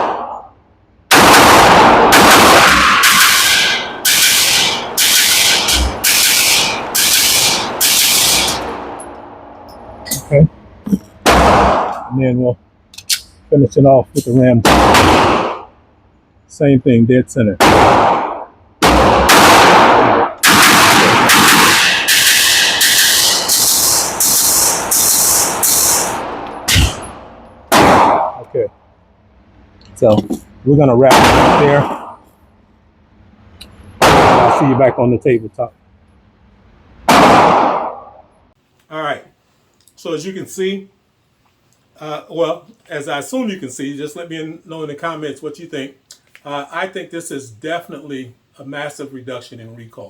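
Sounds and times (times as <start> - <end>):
pistol shots with echo: 1.1 - 9.0, 14.6 - 15.7, 17.6 - 23.5, 26.2 - 28.4, 31.1 - 32.2, 34.0 - 34.8, 37.1 - 38.1.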